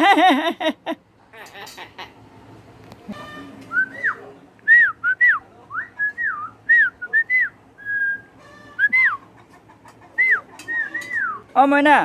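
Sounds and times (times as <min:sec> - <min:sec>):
myna whistling: 0:03.7 - 0:09.2, 0:10.2 - 0:11.4.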